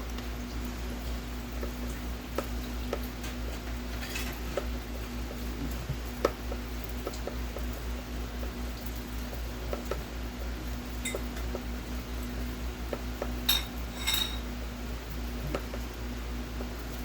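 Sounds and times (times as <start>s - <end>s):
ringing metallic clinks: 13.5s - 14.4s
small metal parts clinking: 13.9s - 14.4s.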